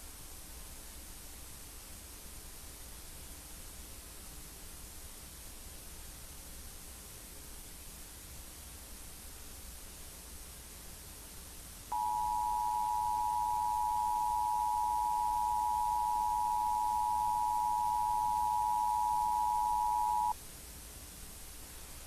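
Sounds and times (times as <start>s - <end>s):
steady hiss: 0.0s - 22.0s
two-tone emergency alert signal: 11.9s - 20.3s.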